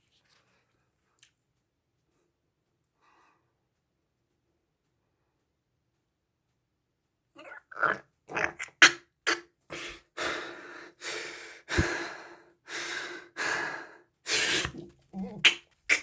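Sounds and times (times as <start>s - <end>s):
person breathing hard and gasping: 9.7s - 16.0s.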